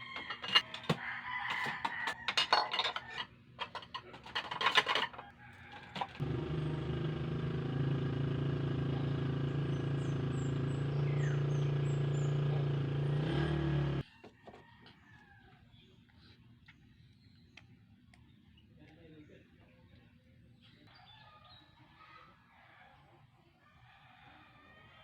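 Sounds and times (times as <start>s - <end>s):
motor humming: 6.2s - 14.0s.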